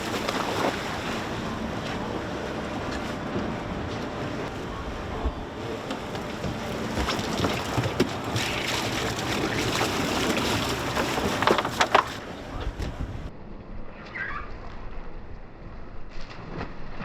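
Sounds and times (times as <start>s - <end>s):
choppy water: 0.0s - 13.3s
wind: 0.0s - 17.0s
sharp knocks on boat: 5.8s - 13.1s.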